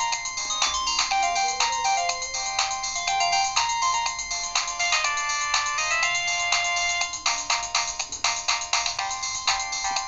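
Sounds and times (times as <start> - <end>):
polyphonic phone ringtone melody: 0.0 - 10.0.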